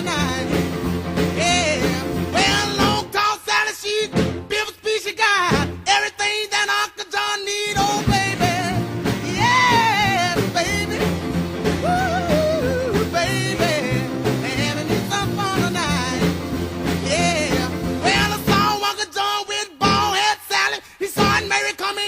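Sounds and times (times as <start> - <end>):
rock music with man singing: 0.0 - 22.0.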